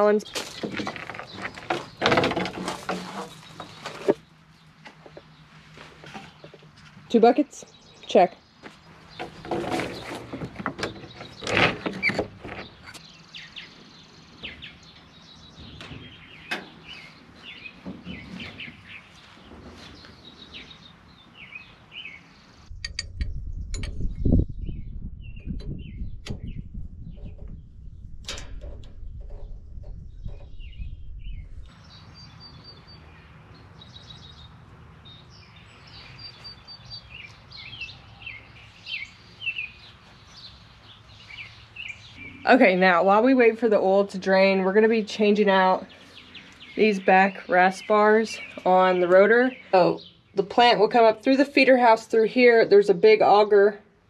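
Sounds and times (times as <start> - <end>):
birds chirping: 0.0 - 53.9
knocks and clunks: 0.3 - 4.2, 9.1 - 13.0, 15.6 - 17.0, 17.7 - 20.0, 25.4 - 30.8.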